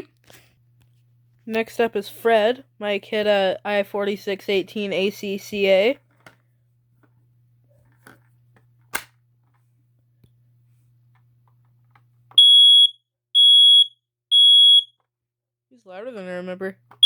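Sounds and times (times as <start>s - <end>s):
smoke alarm beeping: 12.4s - 15.0s.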